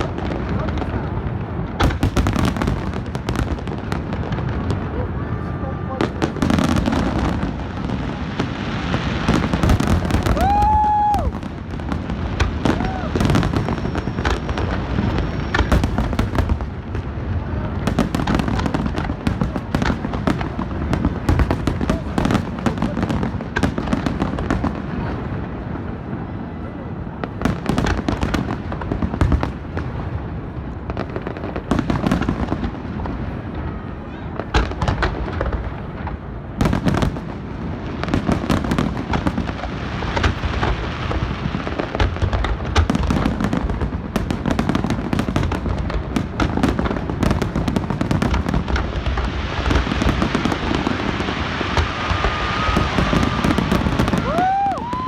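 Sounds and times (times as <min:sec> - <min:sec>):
fireworks bursting: 0:00.0 - 0:55.0
fireworks crackling: 0:00.0 - 0:55.0
fireworks whistling: 0:05.4 - 0:17.0, 0:36.6 - 0:55.0.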